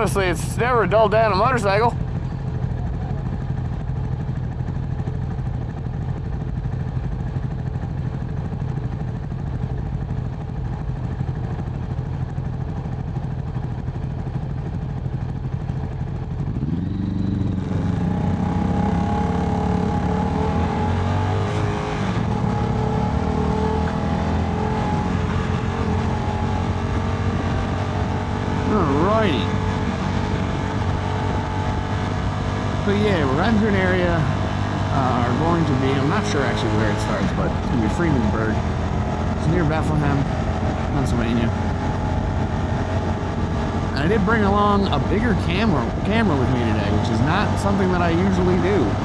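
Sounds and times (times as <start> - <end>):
motorcycle engine running: 0.0 - 49.0.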